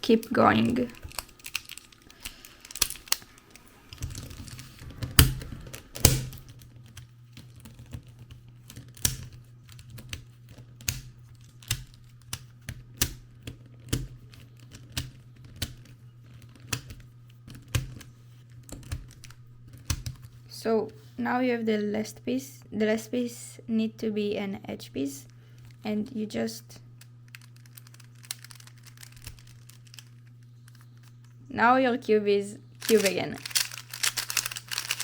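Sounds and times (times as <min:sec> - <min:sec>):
low steady hum: 0:00.0 - 0:35.0
plastic cube pieces clicking: 0:00.9 - 0:18.1, 0:27.3 - 0:31.2, 0:32.8 - 0:35.0.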